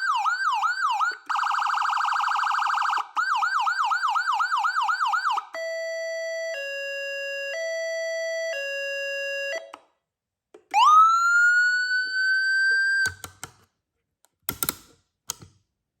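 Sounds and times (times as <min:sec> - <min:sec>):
siren tone sweeping upward: 0:10.8 - 0:13.1.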